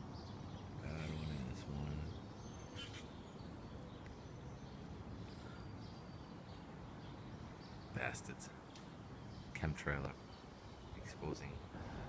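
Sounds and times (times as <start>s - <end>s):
faint background noise: 0.0s - 12.0s
high bird chirps: 0.2s - 8.1s.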